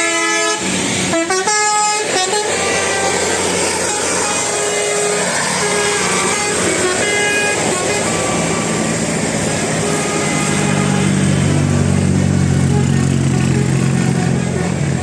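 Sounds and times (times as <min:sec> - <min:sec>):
melodic bus horn: 0:00.0 - 0:15.0
traffic noise: 0:00.0 - 0:15.0.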